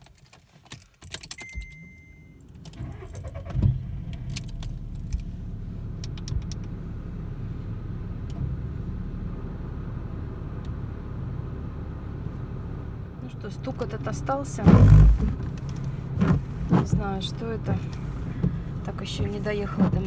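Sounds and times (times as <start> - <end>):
car keys jangling: 0.0 - 5.3
short electronic beep: 1.4 - 2.4
car engine starting and idling: 1.4 - 20.0.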